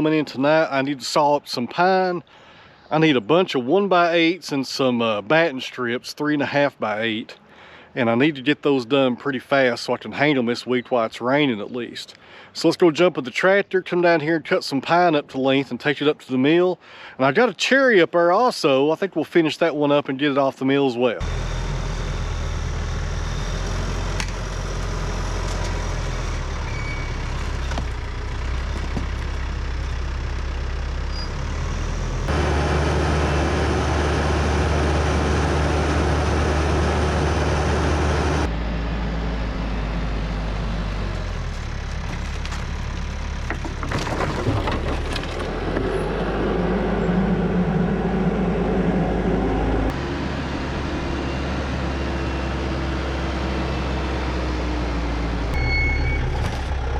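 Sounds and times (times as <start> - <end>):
tractor diesel engine running: 21.2 - 56.9.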